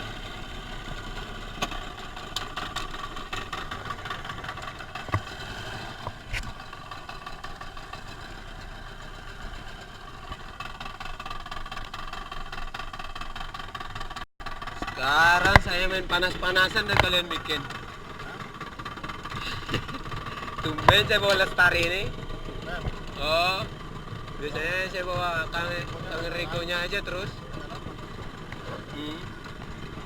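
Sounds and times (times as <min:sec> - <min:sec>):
boat engine running: 0:00.0 - 0:30.0
short knocks: 0:16.8 - 0:17.4.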